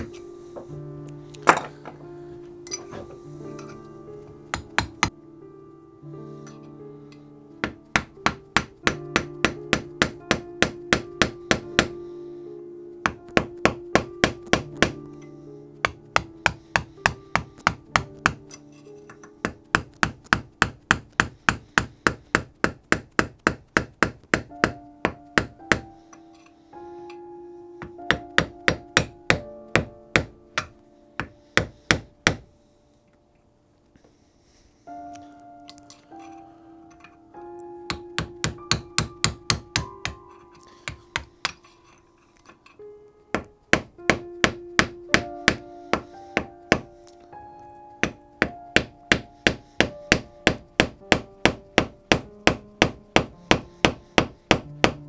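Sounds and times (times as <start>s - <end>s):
background music: 0.0s - 55.0s
hammer striking a steel punch: 4.5s - 5.1s, 7.6s - 12.0s, 13.0s - 15.0s, 15.8s - 25.9s, 28.1s - 32.5s, 37.9s - 40.2s, 40.8s - 41.7s, 43.3s - 46.9s, 48.0s - 55.0s.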